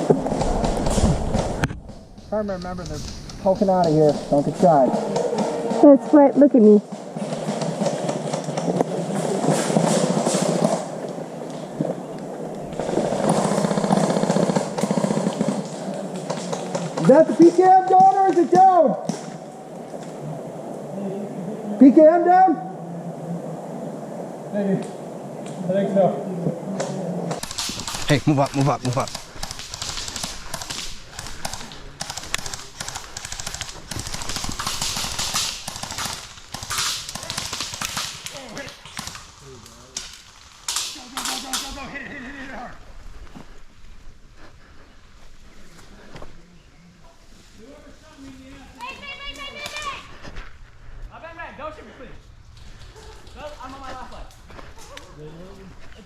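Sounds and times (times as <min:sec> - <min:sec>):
quick footsteps: 0:00.0 - 0:06.0, 0:27.3 - 0:39.4
airsoft guns firing automatic: 0:07.1 - 0:11.0, 0:12.8 - 0:18.6, 0:27.4 - 0:41.8
rustling: 0:26.8 - 0:51.3.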